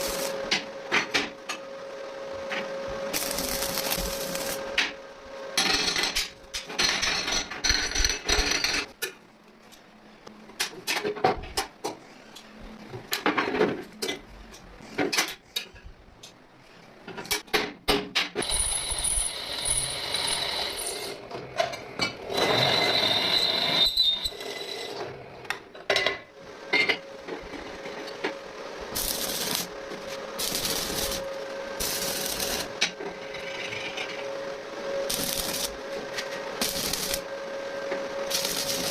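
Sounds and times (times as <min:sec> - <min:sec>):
steady hum: 0:00.0 - 0:06.6, 0:26.4 - 0:38.9
small power tool running: 0:35.0 - 0:35.8, 0:36.6 - 0:37.3, 0:38.2 - 0:38.9.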